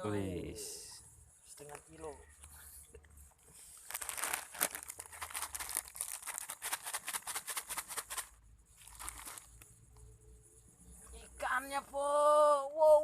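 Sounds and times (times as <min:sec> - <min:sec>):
dense crackling crinkle: 0:03.3 - 0:09.8.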